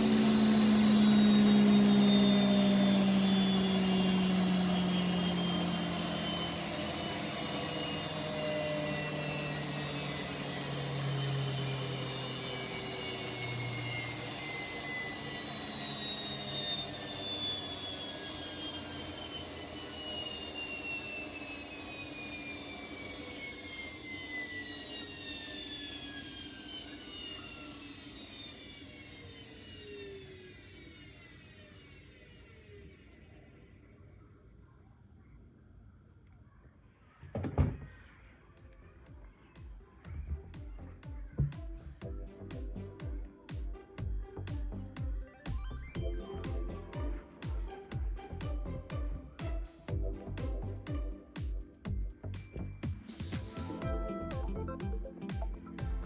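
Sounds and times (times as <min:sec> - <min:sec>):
washing machine drum whine: 0:00.0 - 0:26.8, 0:39.6 - 0:56.0.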